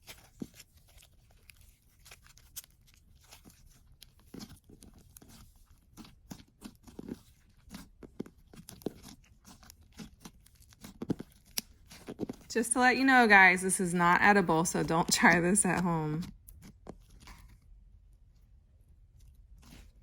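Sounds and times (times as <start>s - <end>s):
slime squishing with sticky clicks: 0.0s - 12.5s.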